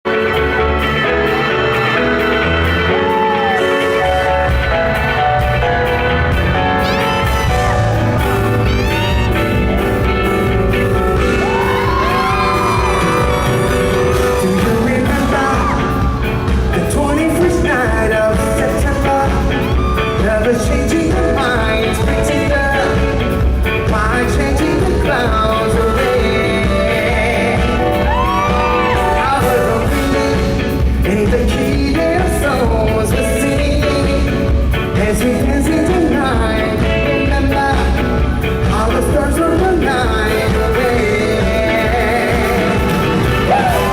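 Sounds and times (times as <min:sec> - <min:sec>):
live pop music: 0:00.0 - 0:43.9
audience yelling and whooping: 0:00.1 - 0:18.1, 0:19.0 - 0:20.8, 0:27.0 - 0:30.0, 0:42.0 - 0:43.9.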